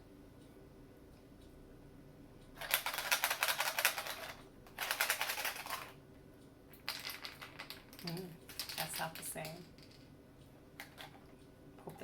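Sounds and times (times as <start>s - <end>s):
plastic eggs rattling with buttons: 2.6s - 5.9s, 6.8s - 10.1s.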